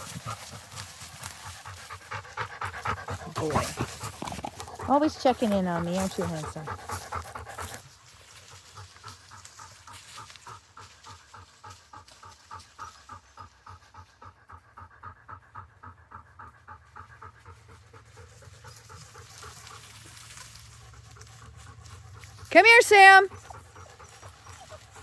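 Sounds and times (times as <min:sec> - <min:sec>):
dog panting: 0:00.0 - 0:25.0.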